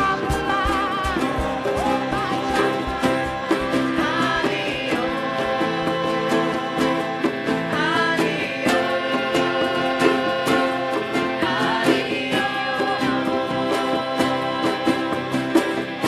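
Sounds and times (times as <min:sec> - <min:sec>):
percussive beat: 0:00.0 - 0:05.7
person singing: 0:00.0 - 0:16.0
plucked guitar: 0:00.0 - 0:16.0.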